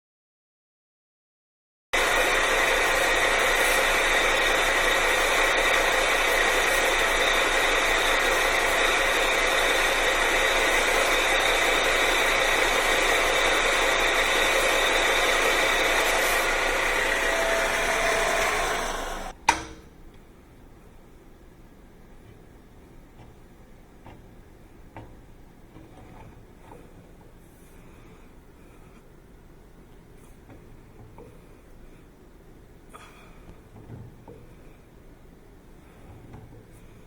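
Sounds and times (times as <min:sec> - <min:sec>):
power tool motor running: 0:02.0 - 0:19.4.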